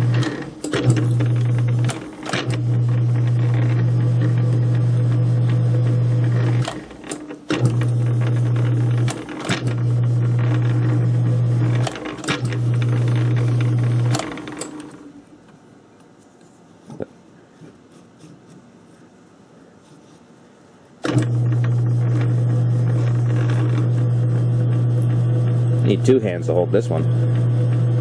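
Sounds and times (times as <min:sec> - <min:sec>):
lathe motor humming: 0:00.0 - 0:15.1, 0:21.0 - 0:28.0.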